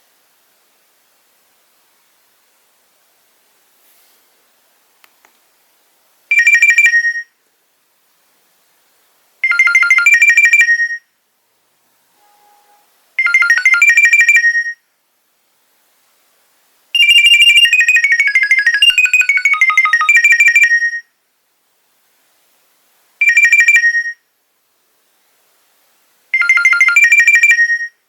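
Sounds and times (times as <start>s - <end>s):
phone ringtone beeping: 6.3s - 7.3s, 9.4s - 11.0s, 12.2s - 14.8s, 17.0s - 21.0s, 23.2s - 24.2s, 26.4s - 27.9s
ringtone melody: 9.4s - 11.0s, 13.2s - 14.7s, 17.0s - 21.0s, 26.4s - 27.9s.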